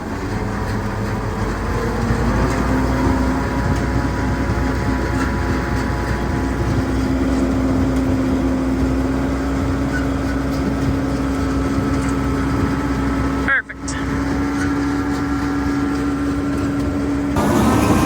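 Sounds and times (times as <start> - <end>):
engine idling: 0.0 - 18.0.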